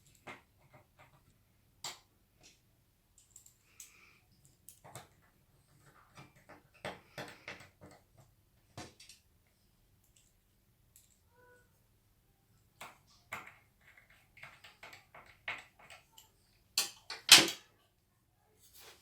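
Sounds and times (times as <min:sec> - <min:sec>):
computer parts clicking and knocking: 0:12.8 - 0:16.2, 0:16.8 - 0:17.6.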